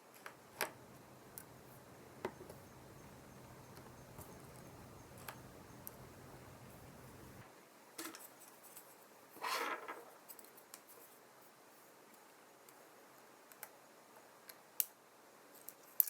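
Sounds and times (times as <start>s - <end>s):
faint low hum: 0.1s - 7.4s.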